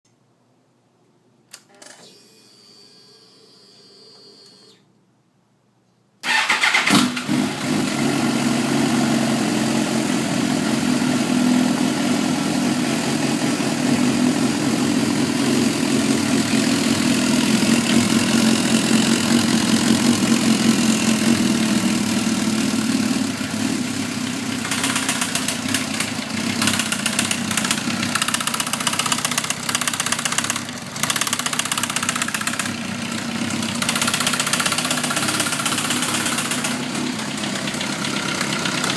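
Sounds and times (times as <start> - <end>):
motorcycle engine starting and idling: 6.2 - 38.9
engine ticking: 24.6 - 38.9.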